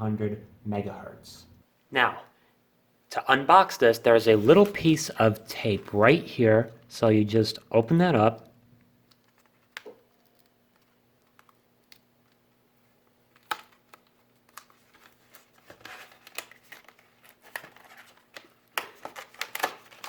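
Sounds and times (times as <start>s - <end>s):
packaging crinkling and rustling: 4.2s - 6.2s, 13.3s - 20.0s.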